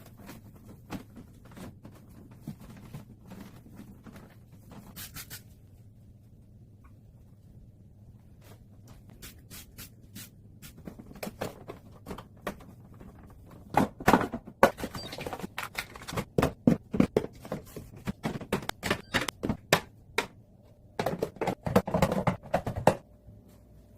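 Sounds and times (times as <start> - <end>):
hard objects clicking and knocking: 11.1 - 23.0.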